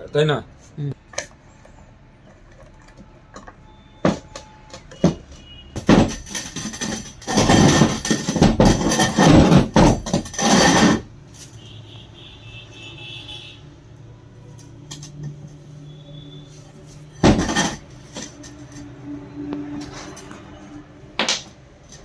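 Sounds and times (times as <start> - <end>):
metal clattering and scraping: 2.3 - 11.6, 16.4 - 20.8.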